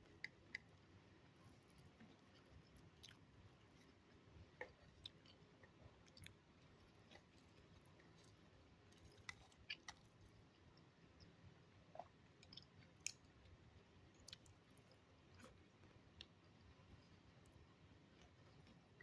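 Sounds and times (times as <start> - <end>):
chewing mouth clicks: 9.0 - 10.2.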